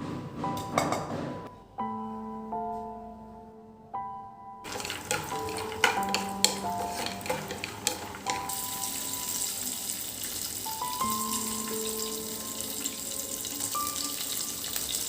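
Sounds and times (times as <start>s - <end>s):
knocks and clicks of kitchen items: 0.0s - 1.5s, 4.7s - 8.7s
soft piano music: 0.0s - 15.0s
running tap water: 4.7s - 15.0s.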